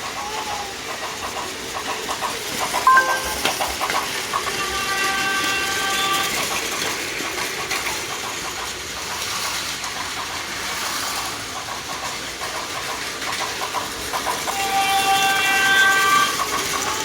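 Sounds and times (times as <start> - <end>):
wheels clicking over track joints: 0.0 - 2.8, 3.4 - 17.0
toy train motors whirring: 0.0 - 17.0
short electronic tone: 2.9 - 3.5.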